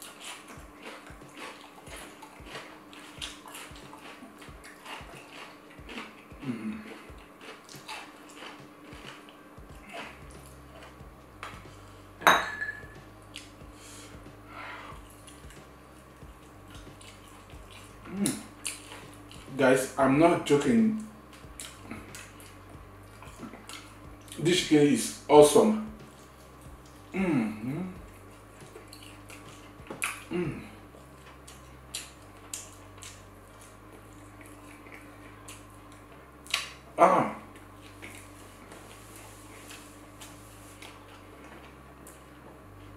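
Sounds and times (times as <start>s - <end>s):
chewing and lip-smacking: 0.0s - 11.9s, 12.9s - 19.9s, 21.0s - 24.5s, 27.9s - 36.8s, 37.5s - 42.9s
person humming: 6.3s - 7.2s, 17.9s - 18.6s, 21.8s - 22.6s, 26.8s - 28.2s, 30.0s - 30.9s.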